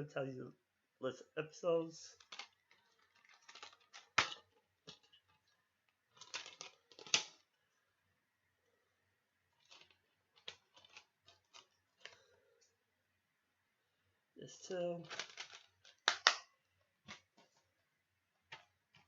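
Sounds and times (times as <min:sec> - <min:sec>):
plastic case clicks and rustles: 0:02.2 - 0:05.5, 0:06.2 - 0:07.4, 0:09.6 - 0:12.2, 0:15.0 - 0:16.5.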